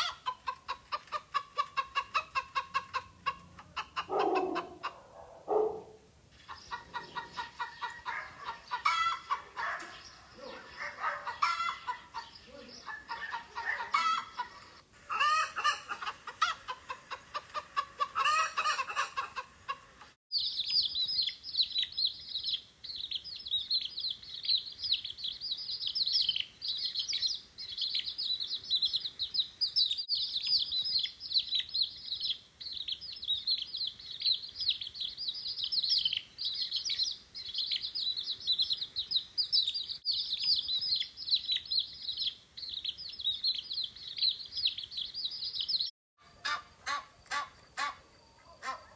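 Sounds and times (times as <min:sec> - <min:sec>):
hen clucking: 0:00.0 - 0:05.7, 0:06.4 - 0:20.2, 0:46.2 - 0:48.9
baby chicks peeping: 0:06.5 - 0:19.8, 0:20.4 - 0:45.9.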